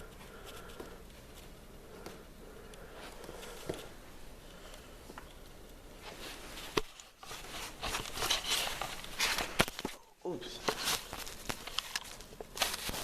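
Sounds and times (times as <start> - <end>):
rustling of boot laces being tied: 6.0 - 10.0
scuffing and rustling: 6.0 - 10.0.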